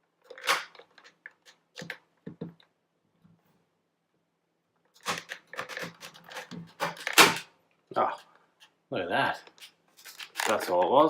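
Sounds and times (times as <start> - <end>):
plastic clattering: 0.2 - 2.7, 4.9 - 7.5, 9.4 - 11.0.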